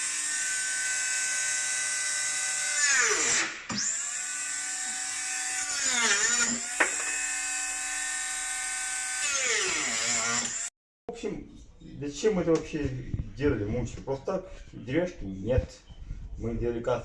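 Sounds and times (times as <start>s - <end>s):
angle grinder whining: 0.0s - 10.7s.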